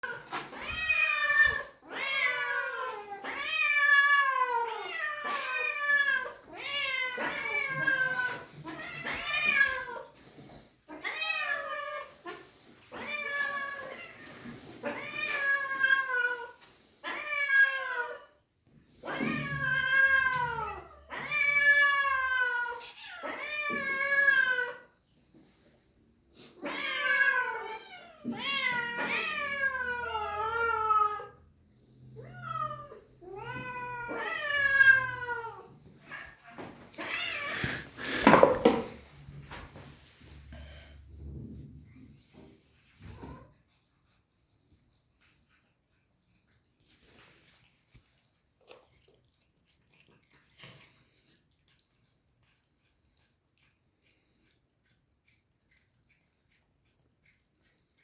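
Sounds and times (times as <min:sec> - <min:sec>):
cats meowing loudly: 0:00.0 - 0:10.1, 0:10.9 - 0:18.2, 0:19.0 - 0:24.9, 0:26.6 - 0:31.5, 0:32.1 - 0:38.9.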